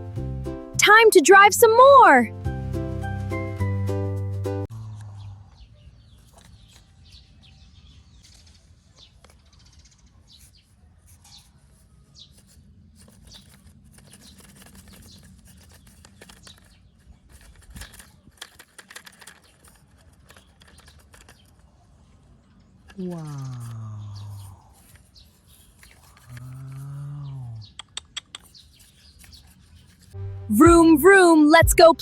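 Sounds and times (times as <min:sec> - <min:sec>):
small birds chirping: 0:04.8 - 0:30.2
light clicks and scrapes: 0:06.1 - 0:07.5, 0:08.2 - 0:26.9, 0:28.0 - 0:30.2.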